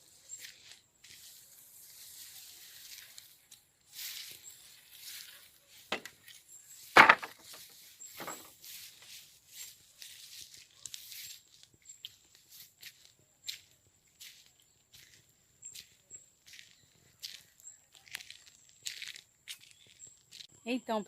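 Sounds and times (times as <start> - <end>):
footsteps crunching: 0.0 - 20.6
sharp knocks: 7.0 - 7.4.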